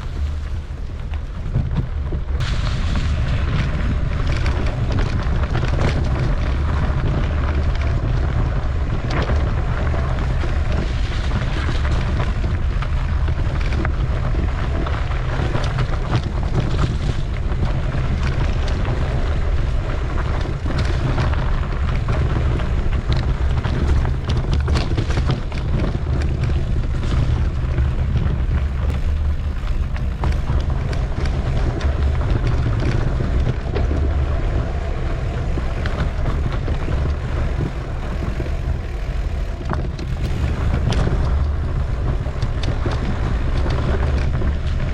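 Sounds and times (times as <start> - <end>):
bike rattling over rough trail: 0.0 - 44.9
wind rumbling on microphone: 0.0 - 44.9.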